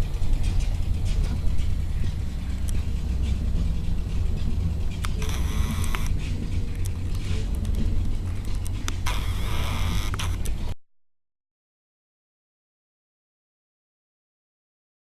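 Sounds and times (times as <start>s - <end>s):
low steady rumble: 0.0s - 10.8s.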